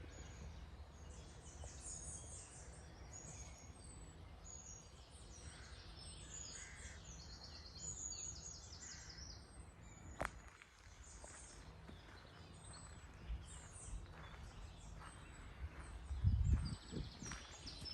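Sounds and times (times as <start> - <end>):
birds chirping and trilling: 0.0 - 17.9
steady low rumble: 11.1 - 17.9.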